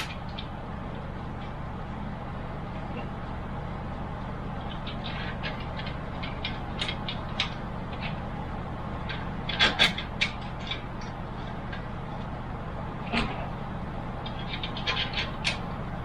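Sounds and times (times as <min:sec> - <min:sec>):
steady low hum: 0:00.0 - 0:16.0
computer hardware clicks and rattles: 0:04.5 - 0:08.4, 0:09.0 - 0:11.9, 0:14.2 - 0:15.7.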